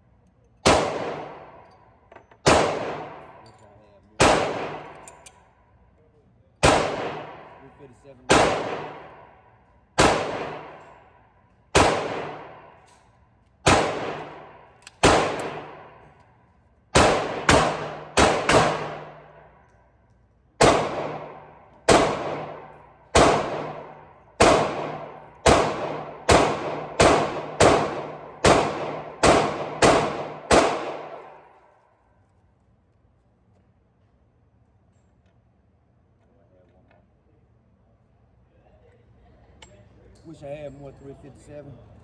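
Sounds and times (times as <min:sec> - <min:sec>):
pistol shots with echo: 0:00.6 - 0:01.7, 0:02.4 - 0:03.5, 0:04.2 - 0:05.2, 0:06.6 - 0:12.9, 0:13.6 - 0:16.2, 0:16.9 - 0:19.6, 0:20.6 - 0:31.6.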